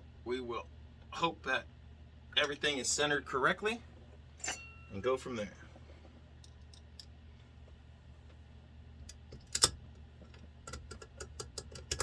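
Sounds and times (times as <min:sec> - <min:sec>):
small metal parts clicking: 0:10.7 - 0:12.0.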